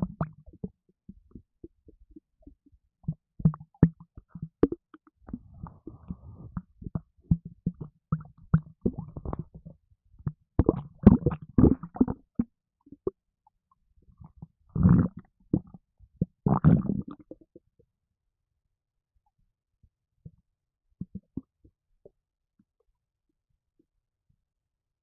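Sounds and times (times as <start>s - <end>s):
stomach gurgling and rumbling: 0.0s - 13.2s, 14.0s - 17.9s, 21.0s - 22.9s.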